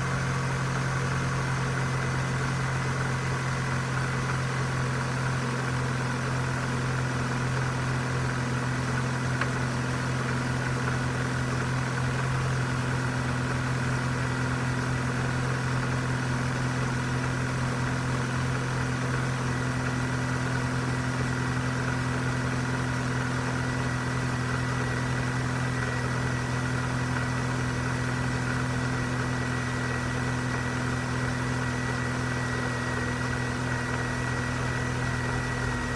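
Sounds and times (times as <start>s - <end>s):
car engine idling: 0.0s - 35.9s.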